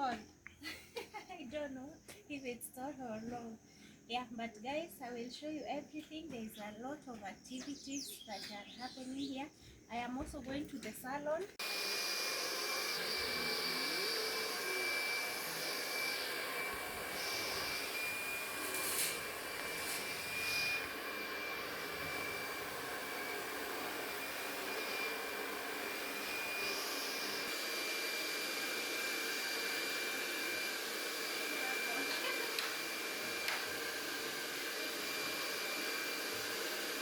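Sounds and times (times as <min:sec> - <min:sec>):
hair dryer running: 0:11.6 - 0:37.0.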